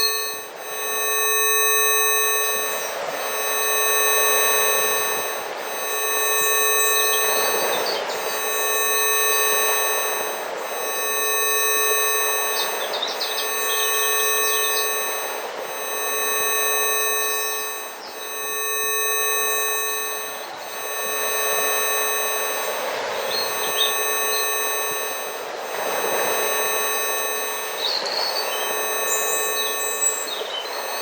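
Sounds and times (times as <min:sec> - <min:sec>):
electronic sine tone chord: 0:00.0 - 0:31.0
bird chirps: 0:07.0 - 0:08.4, 0:12.3 - 0:15.1, 0:23.2 - 0:24.5, 0:27.7 - 0:31.0.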